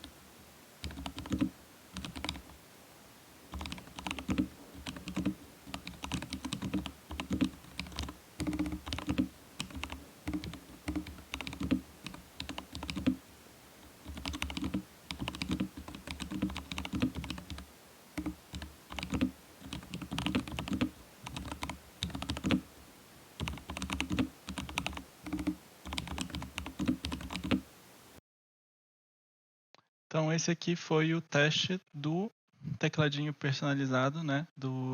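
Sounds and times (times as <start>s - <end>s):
mechanical keyboard typing: 0.8s - 2.6s, 3.5s - 13.2s, 13.8s - 17.6s, 18.2s - 22.6s, 23.4s - 27.6s.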